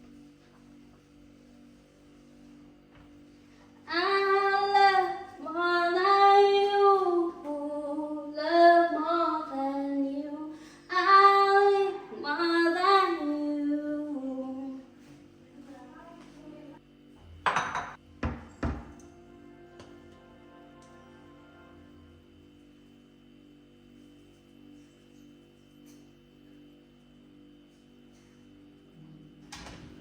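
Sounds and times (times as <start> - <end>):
steady low hum: 0.0 - 30.0
woman singing unaccompanied: 3.9 - 15.0.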